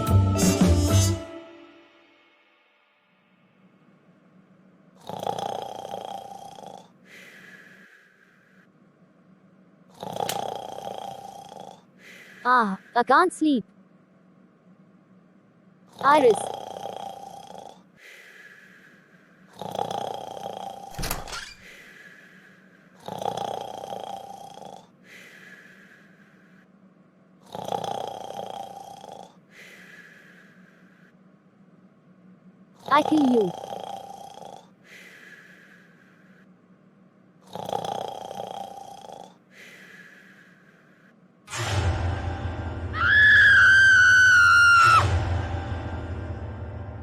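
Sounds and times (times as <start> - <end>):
cartoon character snoring: 5.0 - 8.0, 9.9 - 12.9, 15.9 - 18.9, 19.5 - 21.2, 22.9 - 25.9, 27.4 - 30.3, 32.8 - 35.8, 37.4 - 40.5.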